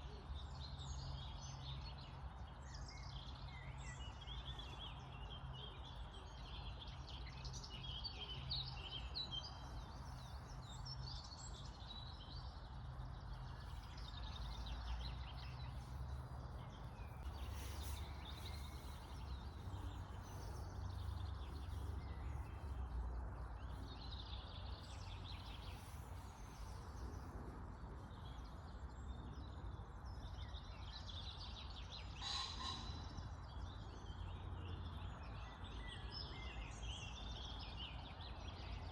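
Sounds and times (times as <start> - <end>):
birds chirping: 9.0 - 27.3
steady low rumble: 9.6 - 30.3.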